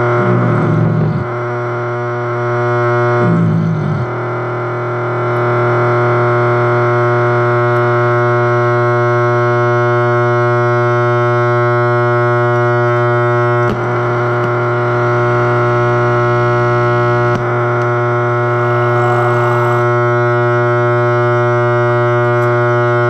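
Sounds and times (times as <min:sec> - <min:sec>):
electronic drone: 0:13.0 - 0:22.4.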